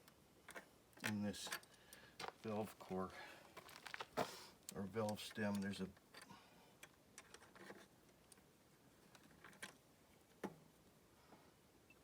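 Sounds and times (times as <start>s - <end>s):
faint clicks and taps of small parts: 3.6s - 10.6s.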